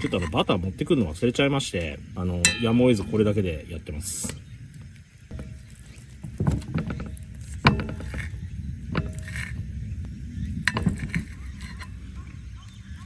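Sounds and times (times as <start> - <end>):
utensils clinking on frying pan: 2.4 - 3.5, 5.3 - 9.7.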